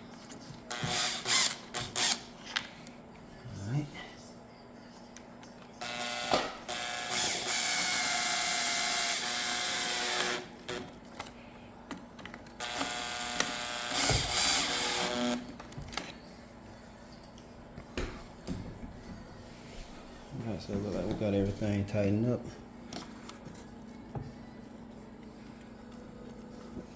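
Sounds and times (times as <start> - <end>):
power drill motor running: 0.7 - 2.4, 5.8 - 11.0, 12.6 - 15.6.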